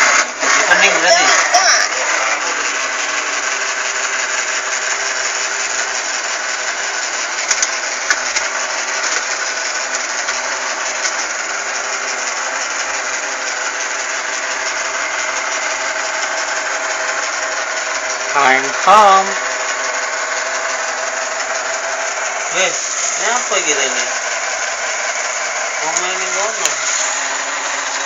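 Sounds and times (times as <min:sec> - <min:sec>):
robot vacuum cleaner whirring: 0:25.9 - 0:28.0.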